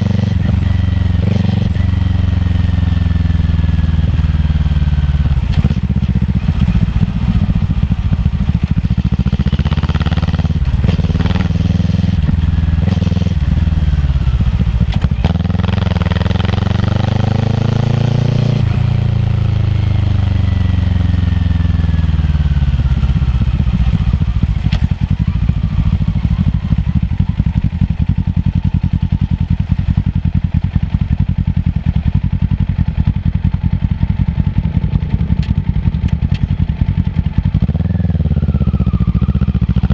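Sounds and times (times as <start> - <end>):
motorcycle engine revving: 0.0 - 39.9.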